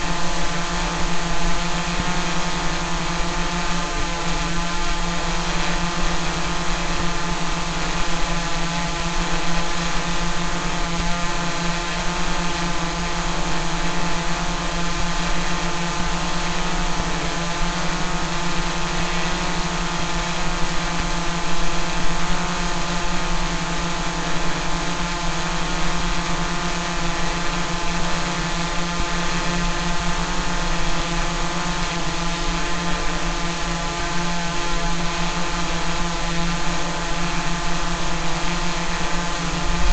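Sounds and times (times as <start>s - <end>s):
drone propellers buzzing: 0.0s - 39.9s.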